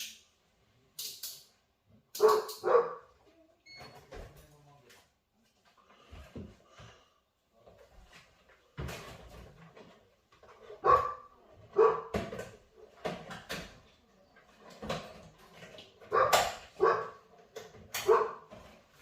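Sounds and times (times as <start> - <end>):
dog barking: 2.2 - 3.2, 10.8 - 12.2, 16.1 - 17.2, 18.0 - 18.5.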